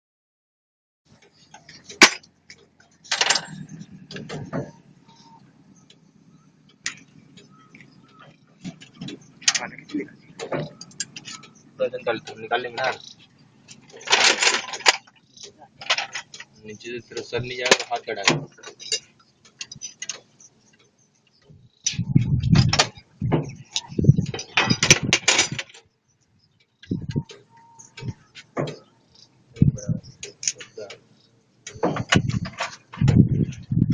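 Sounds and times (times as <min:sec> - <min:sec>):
sharp clicks and knocks: 0:01.2 - 0:06.0, 0:06.6 - 0:25.9, 0:26.6 - 0:28.9, 0:29.6 - 0:33.9.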